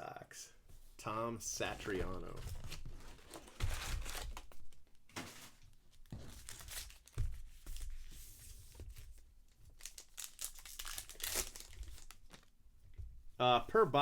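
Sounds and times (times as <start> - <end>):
wrappers torn open and crinkled: 6.4 - 7.2, 9.8 - 12.5.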